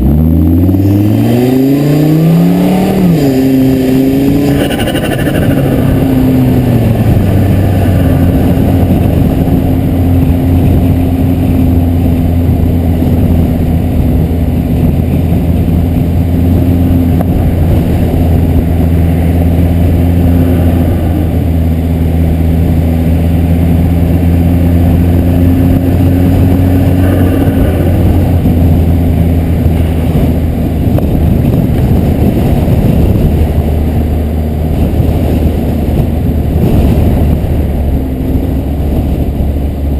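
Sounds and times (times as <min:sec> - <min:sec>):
car engine droning: 0:00.0 - 0:39.9.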